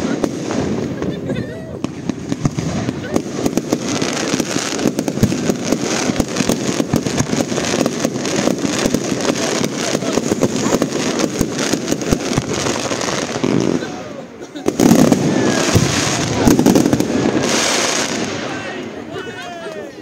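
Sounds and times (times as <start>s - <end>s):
fireworks crackling and popping: 0.0s - 20.0s
loud firework bang: 14.7s - 18.6s.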